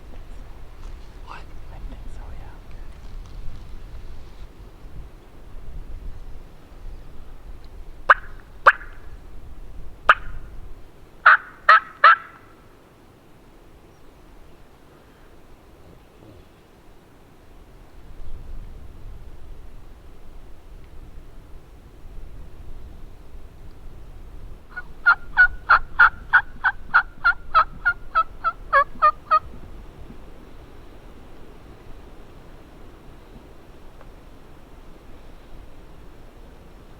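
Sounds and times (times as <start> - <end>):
low wind rumble: 0.0 - 11.7, 17.2 - 36.9
turkey yelps: 11.2 - 12.4, 24.7 - 29.5.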